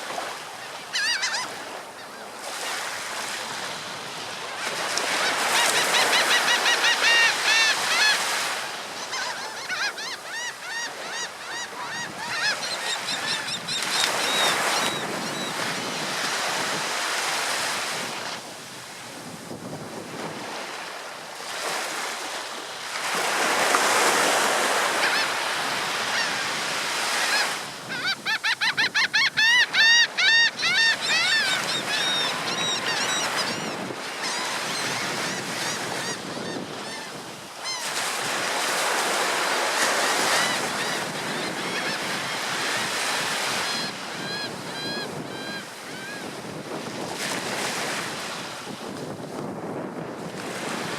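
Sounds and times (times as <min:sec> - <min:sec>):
seagulls calling: 0:00.6 - 0:02.8, 0:05.1 - 0:15.7, 0:24.6 - 0:46.3
ocean surf breaking: 0:12.2 - 0:28.4, 0:29.6 - 0:50.9.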